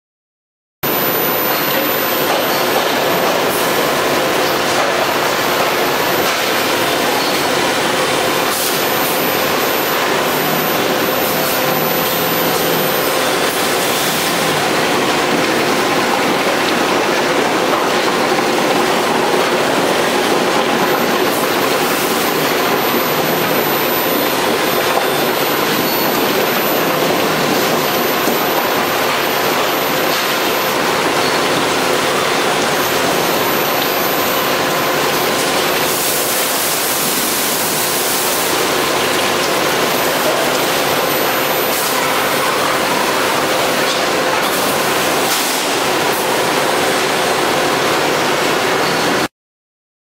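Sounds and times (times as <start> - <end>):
heavy machinery rushing noise: 1.5 - 33.6.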